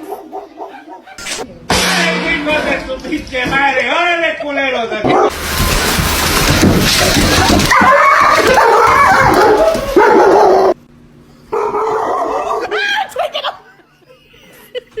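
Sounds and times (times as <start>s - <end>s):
dog yelping and whining: 7.7s - 10.8s.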